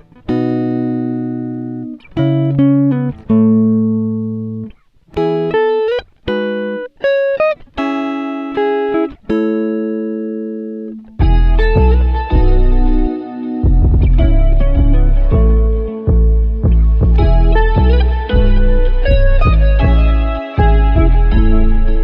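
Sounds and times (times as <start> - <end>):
plucked guitar chords: 0.0 - 22.0
music with deep bass: 11.2 - 22.0.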